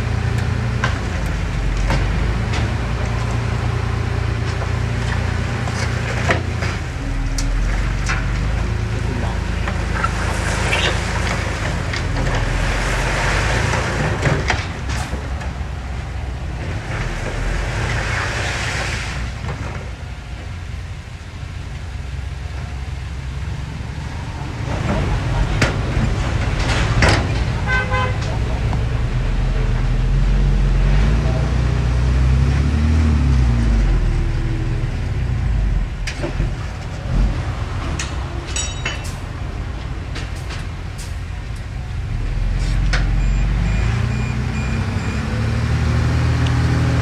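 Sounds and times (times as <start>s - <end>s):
heavy diesel engine running: 0.0s - 47.0s
sharp metal clanks: 37.9s - 39.5s.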